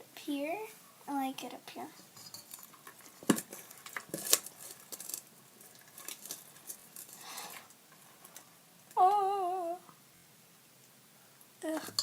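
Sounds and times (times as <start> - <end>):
utensil stirring slime: 2.0 - 8.5.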